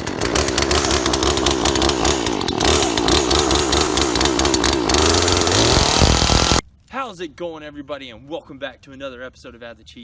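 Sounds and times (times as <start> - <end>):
chainsaw running: 0.0 - 6.6.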